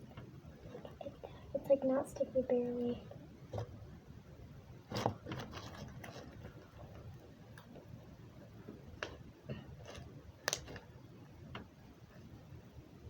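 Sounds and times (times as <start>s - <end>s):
slime clicking and popping: 10.4s - 10.9s.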